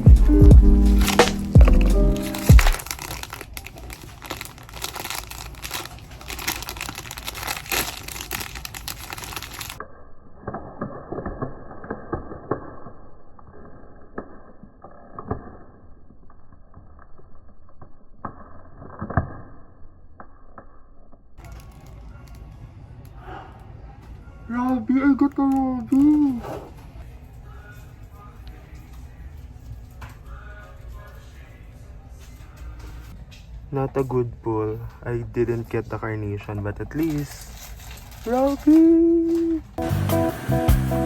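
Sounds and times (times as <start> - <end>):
packaging tearing and crinkling: 0.9 - 9.8, 21.4 - 22.4, 36.9 - 39.8.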